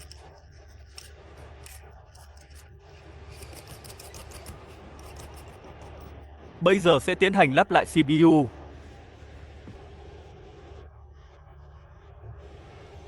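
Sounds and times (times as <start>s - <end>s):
steady low hum: 0.0s - 13.0s
faint scraping on chip: 3.3s - 6.0s.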